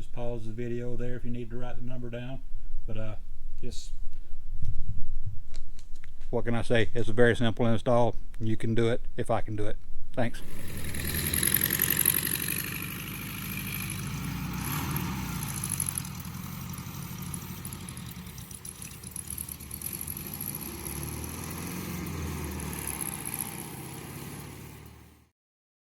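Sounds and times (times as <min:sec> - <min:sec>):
motor running with low rumble: 0:10.4 - 0:25.2.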